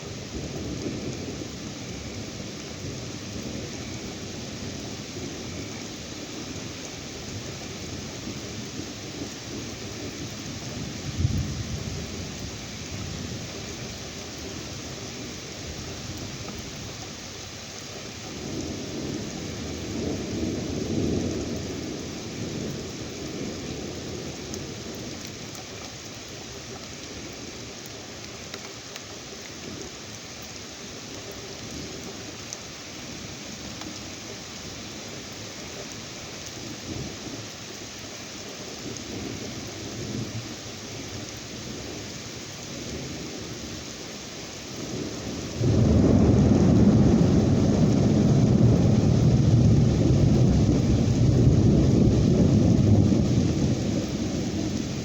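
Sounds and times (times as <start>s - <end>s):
steady rain: 0.0s - 55.0s
rolling thunder: 10.8s - 13.5s, 45.0s - 55.0s.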